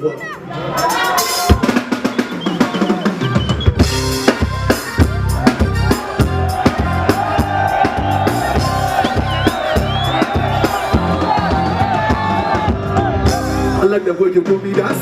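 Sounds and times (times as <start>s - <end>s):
band playing: 0.6s - 15.0s
drum kit beating: 0.8s - 15.0s
bass line: 2.6s - 13.9s.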